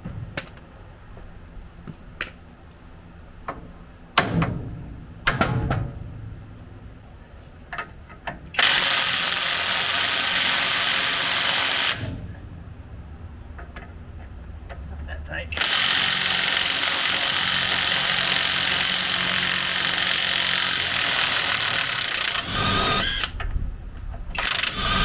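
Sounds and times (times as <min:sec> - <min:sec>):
power tool running: 0:08.6 - 0:12.2, 0:15.6 - 0:23.4, 0:24.3 - 0:25.0.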